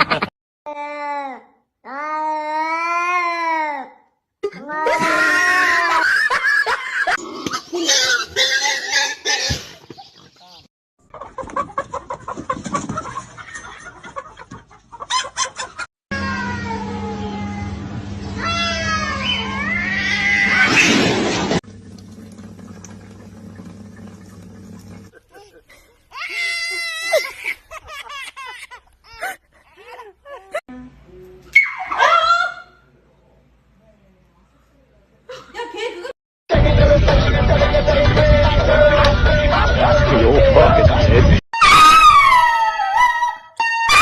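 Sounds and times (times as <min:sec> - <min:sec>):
cat meowing and yowling: 0:18.4 - 0:20.7
squawks and cries: 0:18.4 - 0:20.8, 0:31.4 - 0:32.8
scream-like animal call: 0:18.4 - 0:21.0, 0:41.6 - 0:44.0.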